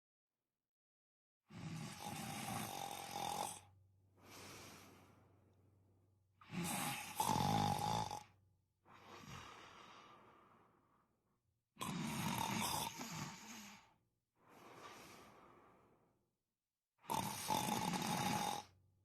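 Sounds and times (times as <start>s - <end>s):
person snoring: 1.5s - 5.1s, 6.4s - 10.5s, 11.8s - 15.6s, 17.0s - 18.8s.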